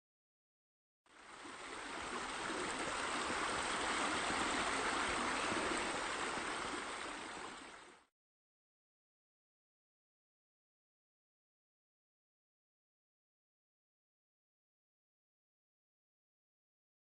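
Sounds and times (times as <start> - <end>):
water running: 1.3 - 8.1.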